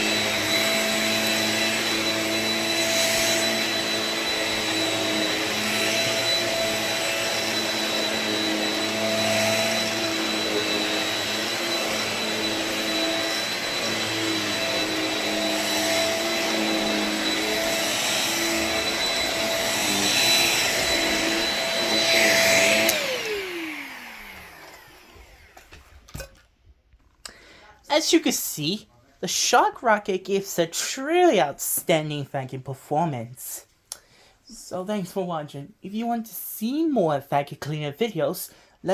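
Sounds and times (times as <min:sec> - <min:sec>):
stick vacuum whining: 0:00.0 - 0:26.2.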